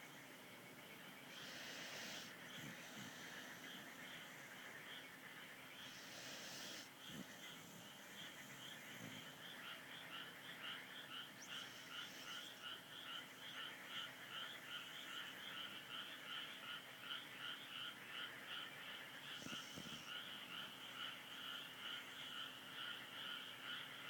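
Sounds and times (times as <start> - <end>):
faint rhythmic animal calling: 0.0 - 24.0
dog snoring: 1.3 - 4.6, 5.8 - 9.5, 19.3 - 20.2.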